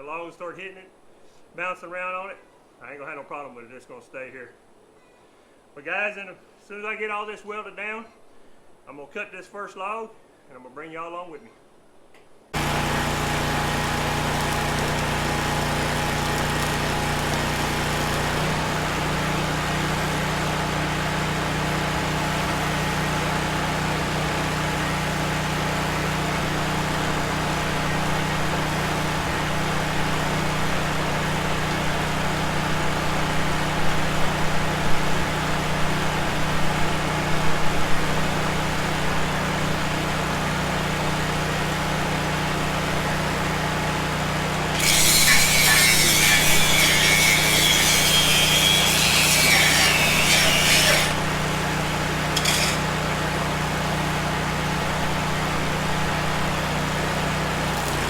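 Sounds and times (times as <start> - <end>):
engine running steadily: 12.6 - 36.8.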